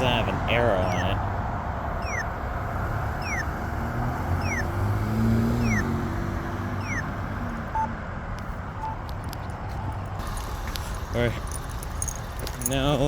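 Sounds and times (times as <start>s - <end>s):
road traffic rumble: 0.0s - 13.0s
vehicle passing: 0.0s - 13.0s
falling chirp locator tone: 0.4s - 1.2s, 2.0s - 2.3s, 3.1s - 6.0s, 6.7s - 7.1s.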